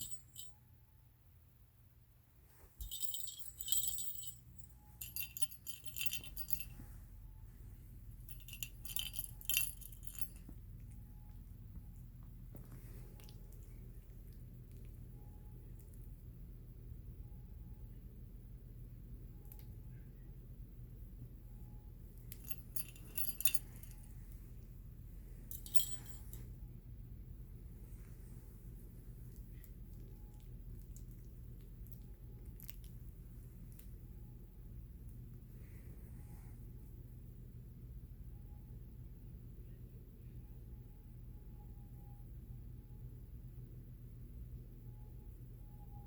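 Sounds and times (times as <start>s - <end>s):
small metal objects jingling: 0.0s - 0.5s, 2.8s - 7.0s, 8.2s - 10.6s, 22.2s - 24.4s, 25.3s - 26.5s
steady low hum: 0.0s - 46.0s.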